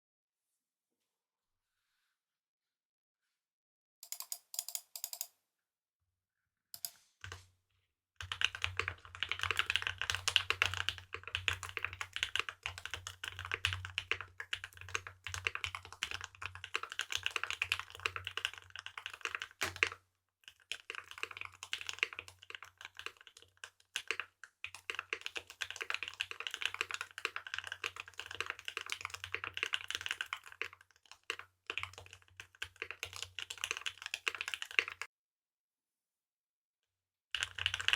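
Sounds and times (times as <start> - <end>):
typing on mechanical keyboard: 8.2 - 35.1, 37.3 - 37.9.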